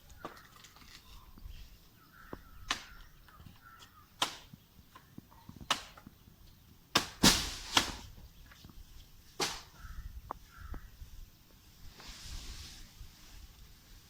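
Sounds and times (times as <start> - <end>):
chopping strikes into palm trunk: 7.0 - 8.0.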